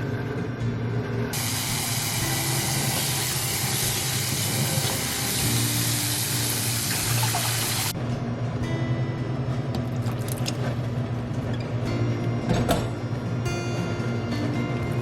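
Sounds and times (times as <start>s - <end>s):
kitchen tap running: 1.4s - 7.9s.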